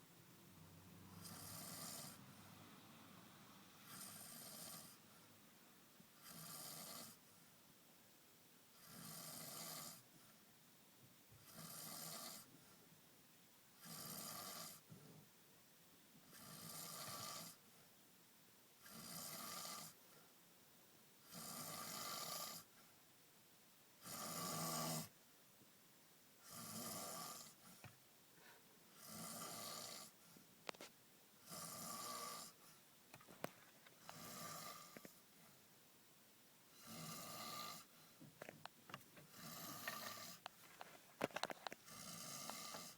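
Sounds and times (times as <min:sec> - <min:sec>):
person snoring: 0:01.1 - 0:02.3, 0:03.8 - 0:05.0, 0:06.2 - 0:07.2, 0:08.8 - 0:10.0, 0:11.4 - 0:12.5, 0:16.3 - 0:17.6, 0:21.3 - 0:22.7, 0:24.0 - 0:25.1, 0:29.0 - 0:30.2, 0:31.5 - 0:32.6, 0:34.0 - 0:35.1, 0:36.8 - 0:37.9, 0:39.3 - 0:40.5, 0:41.8 - 0:42.9.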